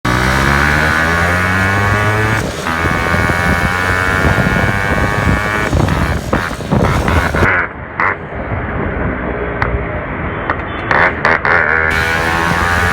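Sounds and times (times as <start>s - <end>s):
motorcycle engine revving: 0.0s - 7.5s, 11.0s - 12.9s.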